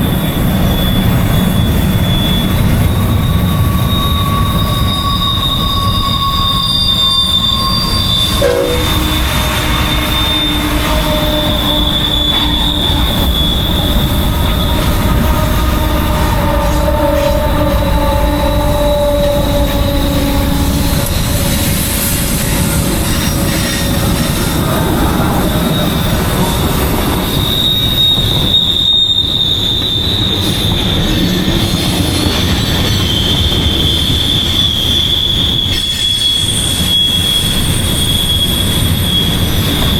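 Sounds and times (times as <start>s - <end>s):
rumble of freight cars: 0.0s - 39.9s
train wheels squealing: 0.0s - 39.9s.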